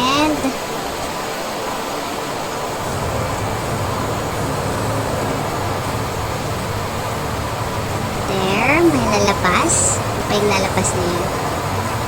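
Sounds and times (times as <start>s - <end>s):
water jets rushing: 0.4s - 12.0s
low rumble: 2.8s - 12.0s.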